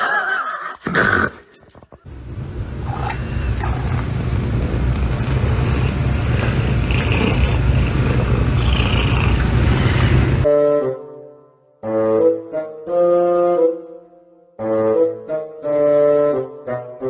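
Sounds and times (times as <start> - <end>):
cat purring loudly: 2.4 - 10.5.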